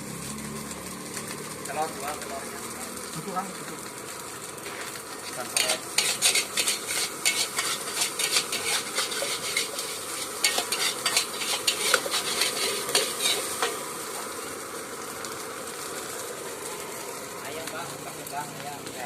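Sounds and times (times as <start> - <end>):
frying sizzle: 0.0 - 19.0
metal spatula scraping wok: 4.6 - 14.6.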